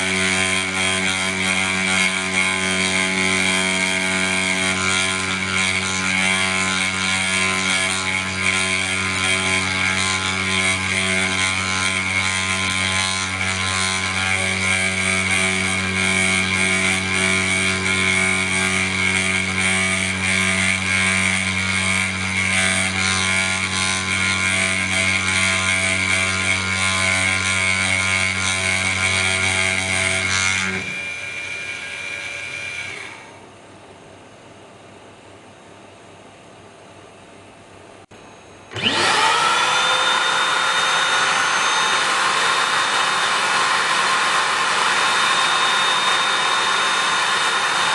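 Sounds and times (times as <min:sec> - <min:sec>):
spindle high whine: 0:38.0 - 0:47.9.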